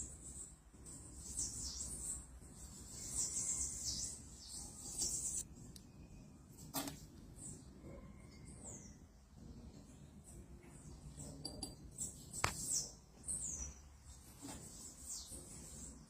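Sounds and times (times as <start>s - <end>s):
small bird peeping chirps: 0.0s - 5.4s.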